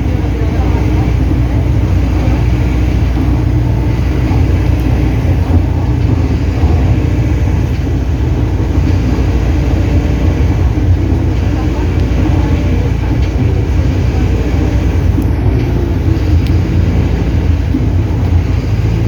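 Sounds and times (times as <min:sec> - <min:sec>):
bus engine and road rumble: 0:00.0 - 0:19.0.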